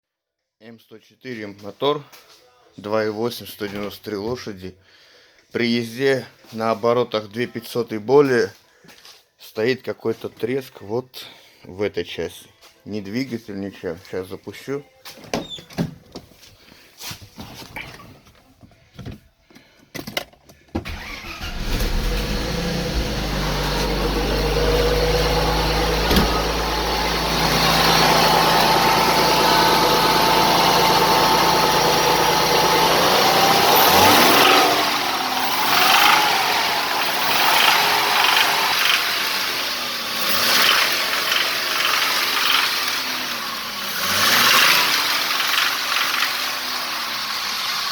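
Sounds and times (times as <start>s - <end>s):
car engine starting and idling: 20.8s - 47.9s
car engine revving: 20.9s - 47.9s.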